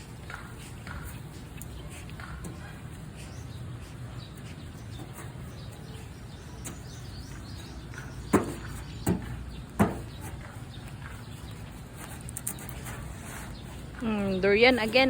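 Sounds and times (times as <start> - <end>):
wheelbarrow knocks: 8.2 - 10.2.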